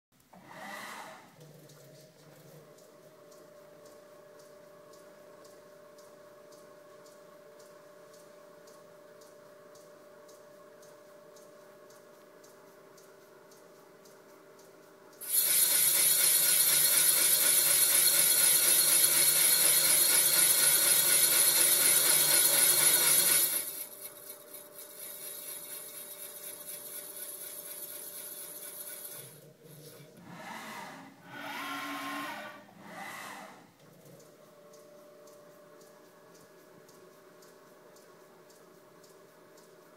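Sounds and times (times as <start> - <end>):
machine tool cutting metal: 15.2 - 33.6.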